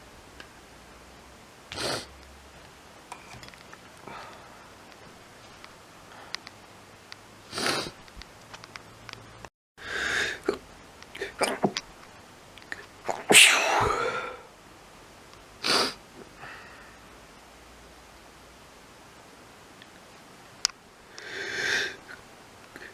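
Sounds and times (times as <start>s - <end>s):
person sneezing: 13.1s - 14.5s.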